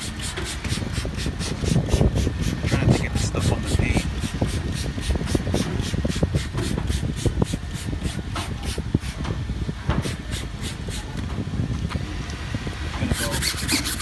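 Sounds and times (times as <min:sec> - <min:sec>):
brush scrubbing a tire: 0:00.0 - 0:09.2, 0:13.0 - 0:14.0.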